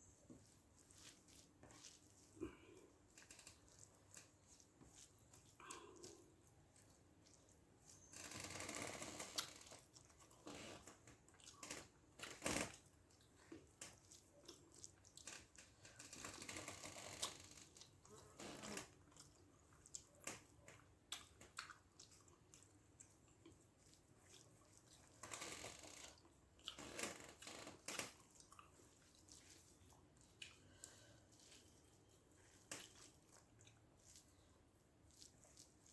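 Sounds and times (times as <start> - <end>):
rustling: 0.0 - 9.8
wet chewing clicks and smacks: 0.4 - 35.9.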